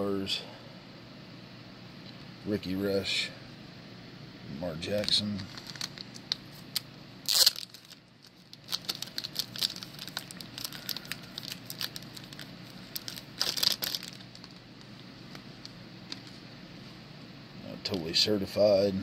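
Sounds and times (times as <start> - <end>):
plastic card sleeves crinkling: 4.9 - 16.4.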